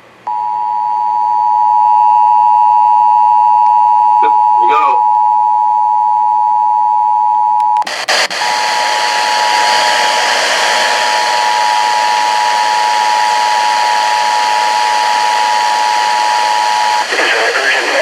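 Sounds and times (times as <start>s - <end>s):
clicks: 7.6s - 8.4s
static hiss: 7.8s - 18.0s.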